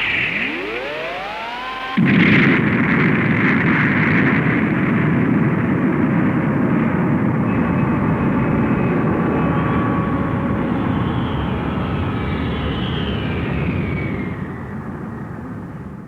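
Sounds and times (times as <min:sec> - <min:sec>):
faint high tone: 0:00.0 - 0:02.1
sci-fi engine roar: 0:00.0 - 0:02.4.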